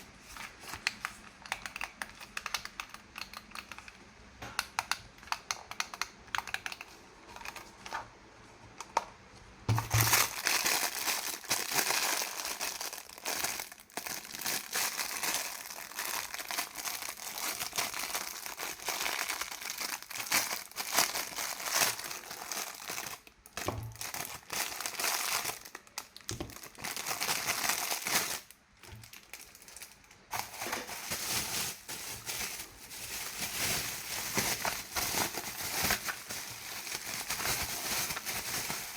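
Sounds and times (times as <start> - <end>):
toy packaging crinkling: 9.7 - 38.9.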